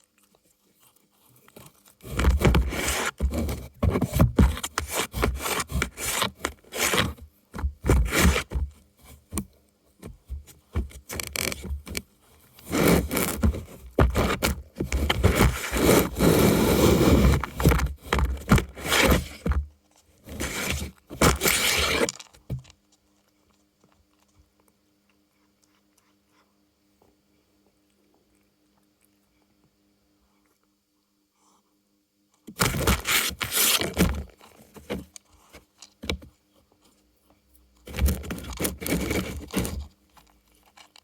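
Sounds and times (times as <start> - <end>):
cardboard scratching and tearing: 2.0 - 9.3, 10.0 - 12.0, 12.6 - 19.6, 20.2 - 22.3, 32.6 - 35.1, 37.9 - 39.9.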